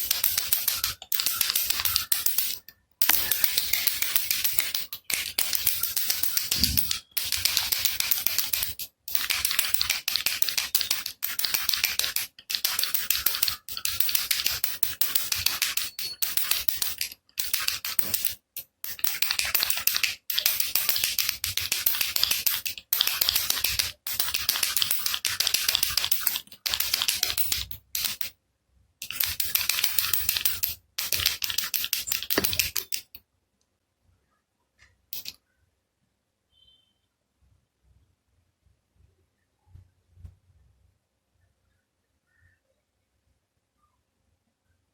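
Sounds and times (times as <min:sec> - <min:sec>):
baby rattle shaking: 0:00.0 - 0:28.3, 0:29.0 - 0:33.2, 0:35.2 - 0:35.4.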